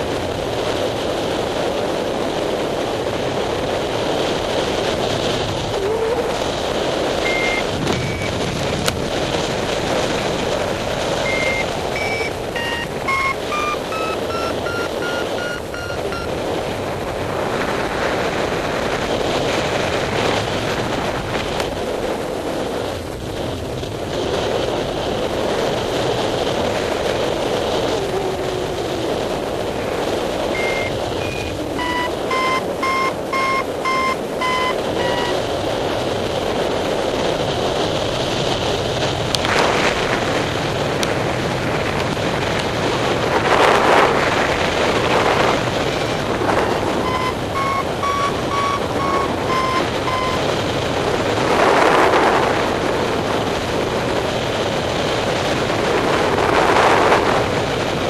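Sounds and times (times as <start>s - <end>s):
wind on microphone: 0.0s - 58.0s
variometer short beeps: 7.2s - 8.4s, 11.2s - 16.4s, 30.5s - 35.4s, 46.5s - 50.6s.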